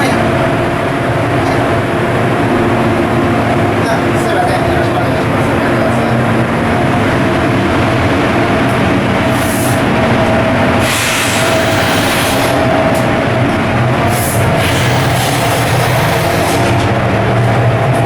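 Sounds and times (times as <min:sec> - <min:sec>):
diesel engine droning: 0:00.0 - 0:18.0
hissing burst: 0:10.8 - 0:12.6, 0:14.1 - 0:17.0.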